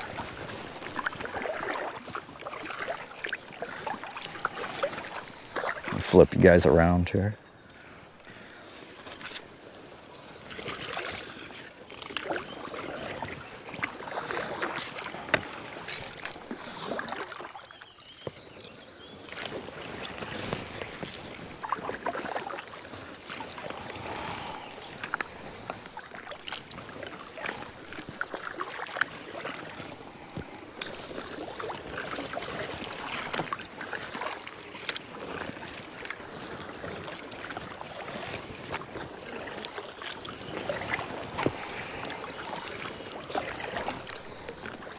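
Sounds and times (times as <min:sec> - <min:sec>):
paddle splashing water: 0:00.0 - 0:44.9.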